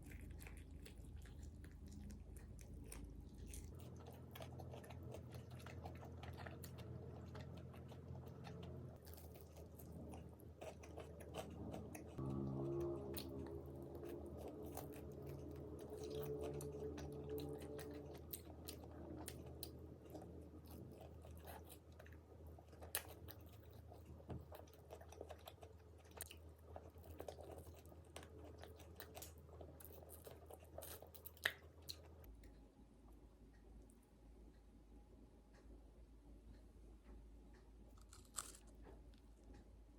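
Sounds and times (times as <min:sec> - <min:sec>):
person chewing crispy food: 0:00.0 - 0:32.3, 0:37.9 - 0:39.3
low steady pitched tone: 0:11.5 - 0:20.6.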